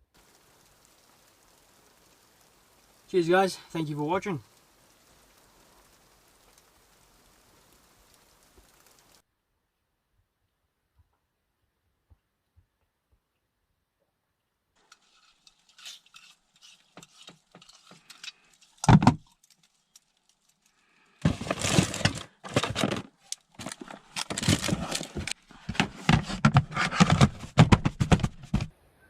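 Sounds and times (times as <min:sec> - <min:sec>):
objects clattering: 0:14.8 - 0:19.7, 0:21.2 - 0:28.7
objects rattling and scraping: 0:14.8 - 0:20.1, 0:21.2 - 0:28.7.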